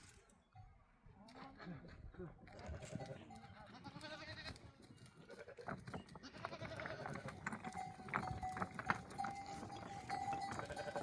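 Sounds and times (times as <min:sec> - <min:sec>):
goats and sheep bleating: 0:02.5 - 0:11.0.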